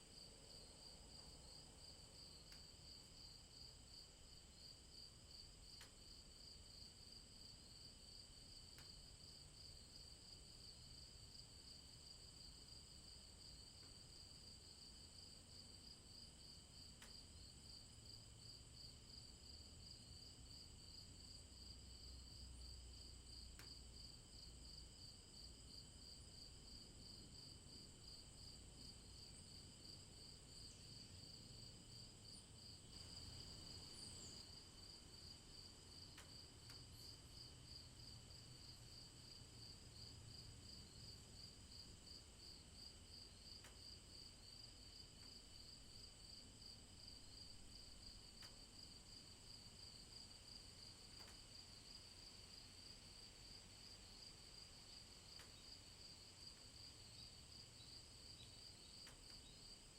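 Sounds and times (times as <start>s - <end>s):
insects trilling: 33.0s - 35.3s.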